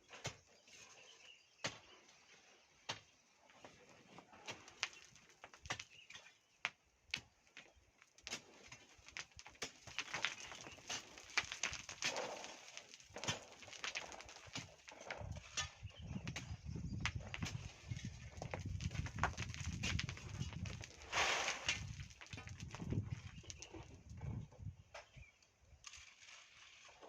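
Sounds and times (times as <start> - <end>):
hand tools knocking stones: 4.4 - 23.7.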